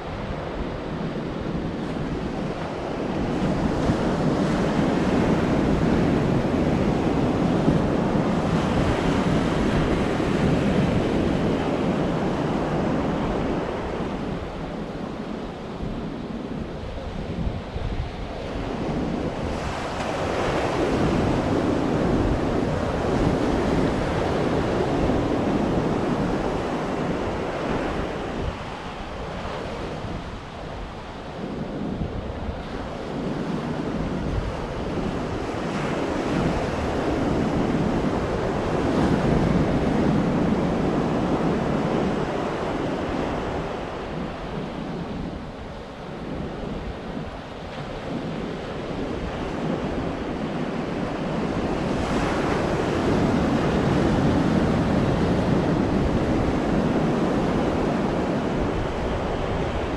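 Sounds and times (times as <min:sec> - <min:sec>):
waves breaking on shore: 0:00.0 - 0:59.9
wind rumbling on microphone: 0:00.0 - 0:59.9.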